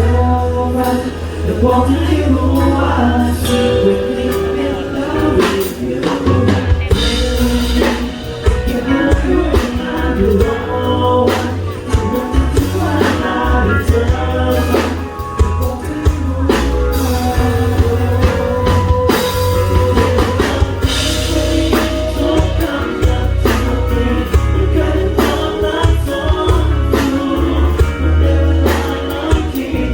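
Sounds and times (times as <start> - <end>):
live band playing pop ballad: 0.0 - 29.9
person singing: 0.0 - 29.9.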